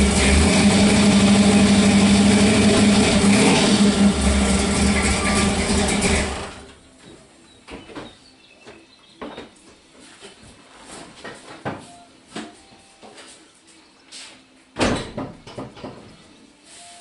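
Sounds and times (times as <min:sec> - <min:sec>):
truck engine running: 0:00.0 - 0:06.8.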